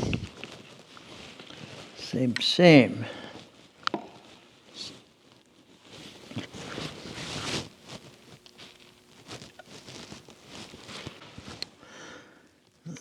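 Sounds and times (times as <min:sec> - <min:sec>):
light scraping and rustling: 0:03.3 - 0:11.8.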